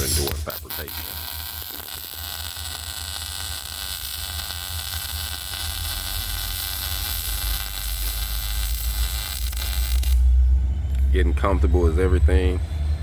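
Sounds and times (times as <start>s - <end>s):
welding arc sizzling: 0.0s - 10.4s
low hum: 0.0s - 13.0s.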